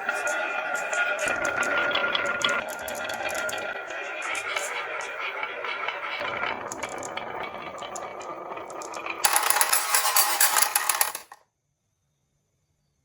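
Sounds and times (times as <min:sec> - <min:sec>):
marbles clattering down wooden run: 0:01.3 - 0:03.7, 0:06.2 - 0:11.4.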